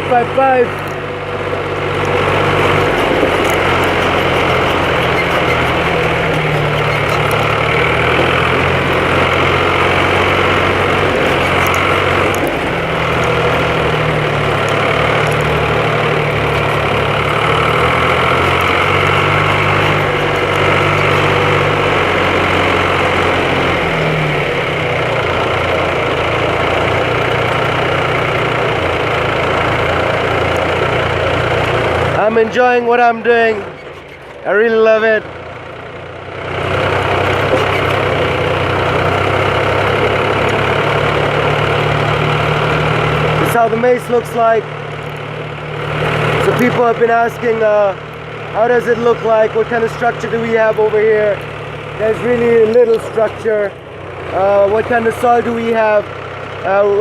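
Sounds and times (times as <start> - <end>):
tractor engine running: 0.0 - 57.0
light rattling clicks: 2.0 - 21.6.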